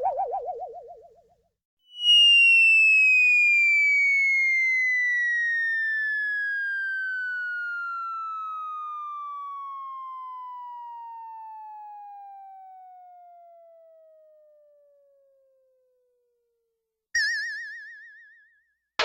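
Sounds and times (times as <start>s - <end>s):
whistle tone gliding down: 0.0s - 1.2s, 1.9s - 9.0s.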